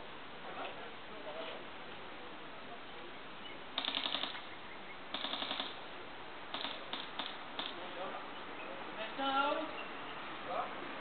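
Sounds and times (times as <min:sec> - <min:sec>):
airsoft gun firing bursts: 0:03.8 - 0:04.5, 0:05.1 - 0:05.8, 0:06.5 - 0:07.8.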